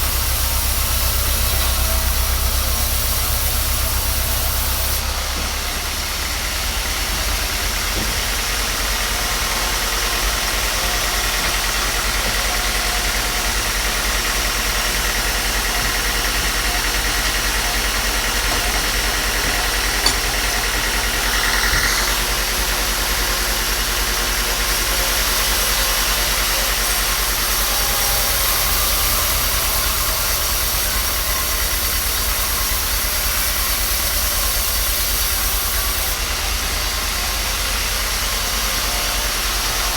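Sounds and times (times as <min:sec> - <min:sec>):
machine motor running: 0:00.1 - 0:24.4.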